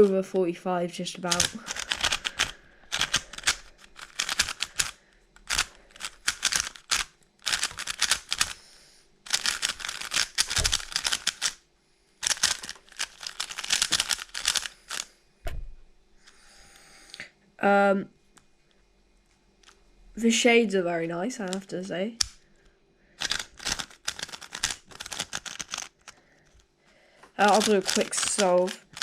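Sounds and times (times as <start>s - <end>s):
plastic puzzle cube clacking: 1.3s - 8.6s, 9.3s - 11.6s, 12.2s - 15.1s, 21.4s - 22.4s, 23.2s - 26.6s, 27.4s - 29.0s.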